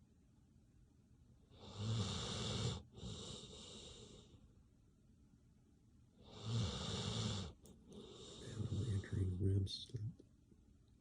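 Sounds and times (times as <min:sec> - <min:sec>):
dog snoring: 0:01.5 - 0:04.4, 0:06.2 - 0:09.4.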